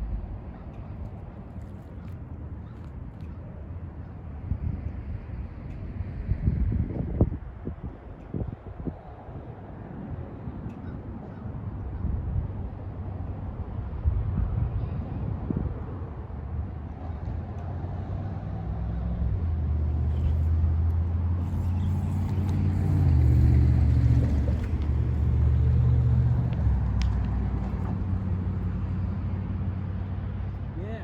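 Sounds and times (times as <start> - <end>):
engine humming: 16.1 - 30.8.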